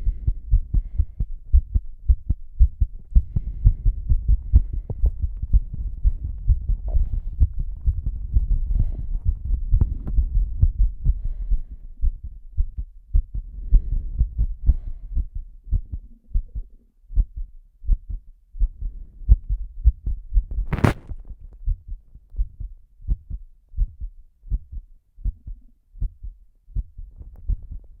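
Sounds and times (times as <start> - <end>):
faint breathing: 0.0 - 16.2
heartbeat thumps: 0.0 - 28.0
sharp rustling: 20.7 - 21.2.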